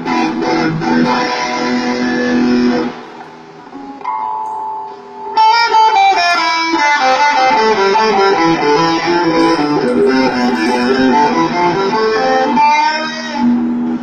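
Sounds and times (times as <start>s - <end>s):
electric guitar playing: 0.0s - 14.0s.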